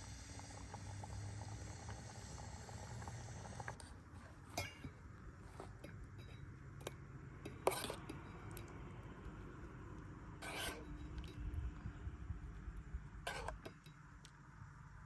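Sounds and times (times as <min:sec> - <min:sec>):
cookware and utensils clinking: 0:04.5 - 0:05.0
short scraping sound: 0:10.4 - 0:11.2, 0:13.3 - 0:13.6.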